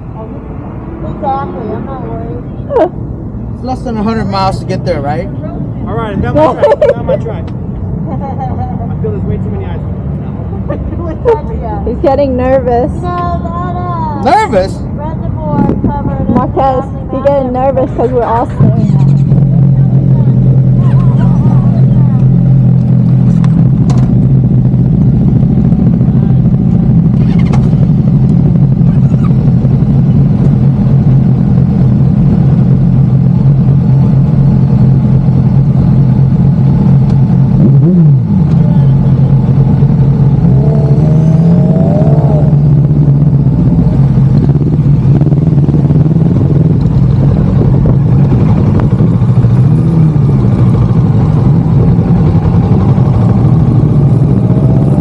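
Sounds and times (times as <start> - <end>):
motorcycle engine running: 14.2 - 55.0
motorcycle engine revving: 18.0 - 55.0.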